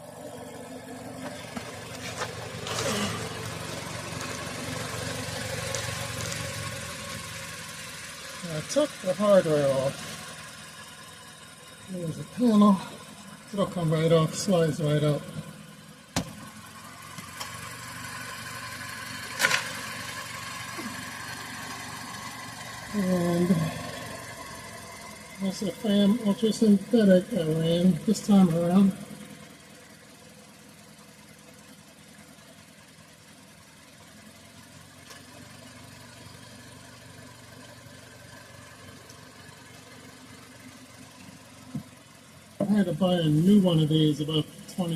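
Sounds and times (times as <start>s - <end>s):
car engine idling: 0.0s - 44.9s
sharp scrape or clatter: 2.0s - 3.3s.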